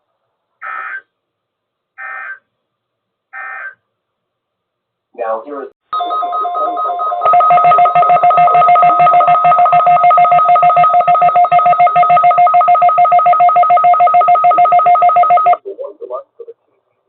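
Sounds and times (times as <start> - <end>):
rapid two-pitched electronic beeping: 7.3 - 15.6.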